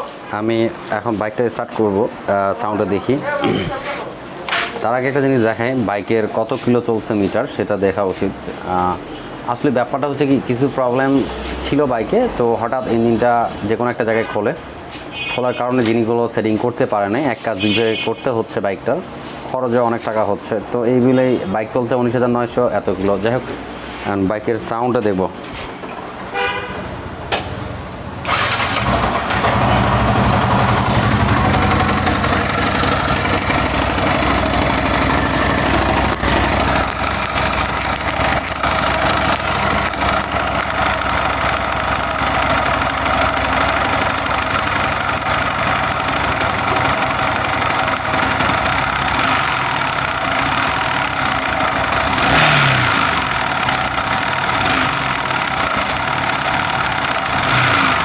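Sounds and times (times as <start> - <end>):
engine knocking: 28.3 - 58.0
motorcycle engine idling: 28.3 - 58.0.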